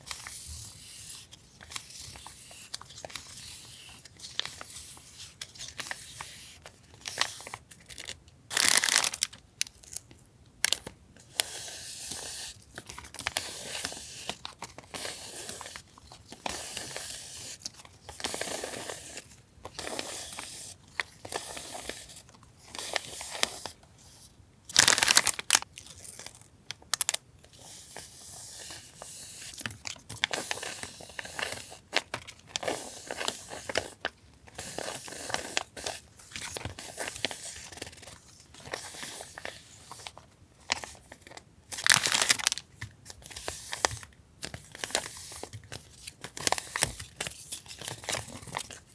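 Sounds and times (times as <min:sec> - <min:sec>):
paper crinkling and rustling: 0:00.0 - 0:10.1, 0:24.7 - 0:27.2, 0:29.4 - 0:48.9.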